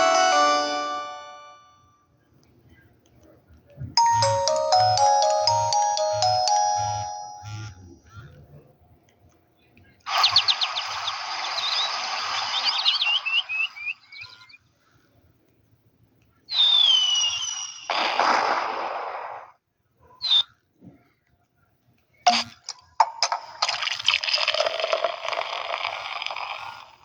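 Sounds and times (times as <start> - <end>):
phone ringtone melody: 0.0 - 1.7, 4.0 - 7.9
birdsong ringtone chirps: 4.0 - 8.1
falling whistle: 16.5 - 17.9.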